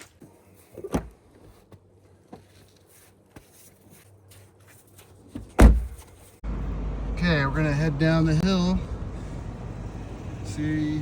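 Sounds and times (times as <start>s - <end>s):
loud heavy thud: 5.6s - 6.0s.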